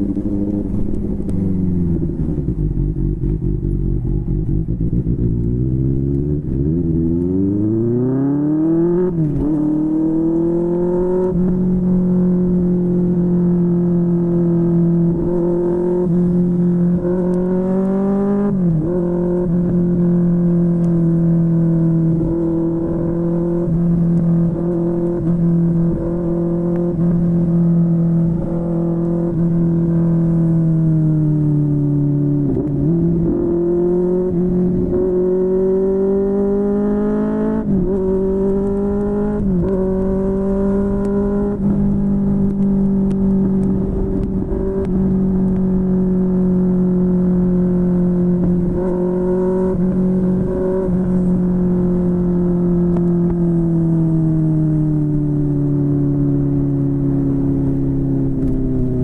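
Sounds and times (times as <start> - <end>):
motorcycle engine running: 0.0 - 7.3.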